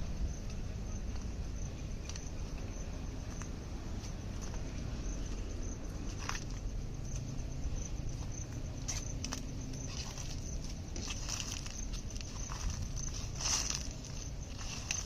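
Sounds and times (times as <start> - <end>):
footsteps on the ground: 0.0 - 15.0
high insect trill: 0.0 - 15.0
low rumble of wind: 0.0 - 15.0.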